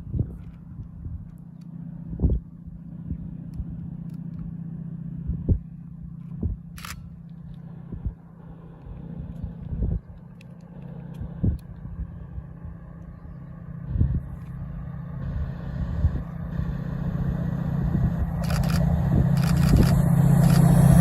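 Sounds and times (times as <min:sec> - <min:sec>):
locomotive diesel engine drone: 0:00.0 - 0:21.0
short low thumps: 0:05.2 - 0:05.7, 0:06.4 - 0:06.8.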